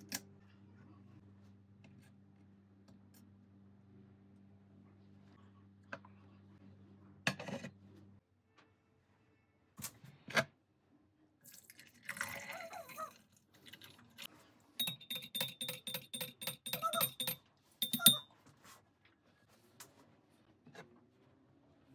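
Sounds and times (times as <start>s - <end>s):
spoon clinking in a cup: 11.6s - 14.2s, 14.8s - 18.3s.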